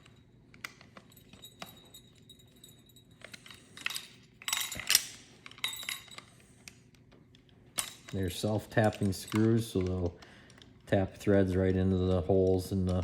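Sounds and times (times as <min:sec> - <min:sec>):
screwdriver scraping and clinking: 0:00.0 - 0:06.4.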